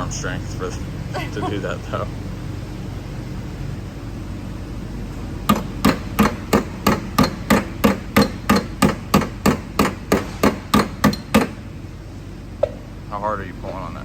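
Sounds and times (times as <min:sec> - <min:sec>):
slide hammer knocking on metal: 0:05.5 - 0:11.6.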